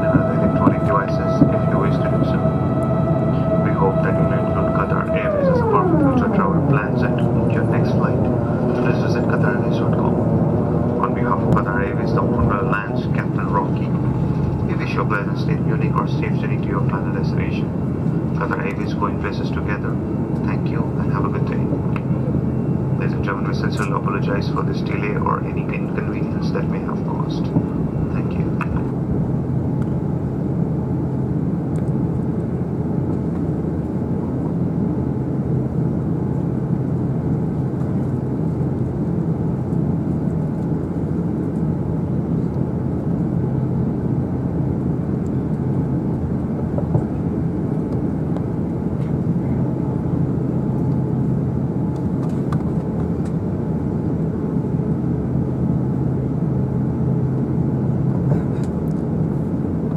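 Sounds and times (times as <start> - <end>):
airplane cabin hum: 0.0 - 59.9.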